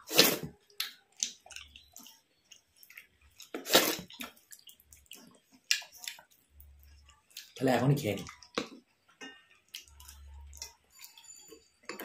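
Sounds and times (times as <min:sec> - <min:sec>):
wet chewing smacks: 0:00.7 - 0:07.6.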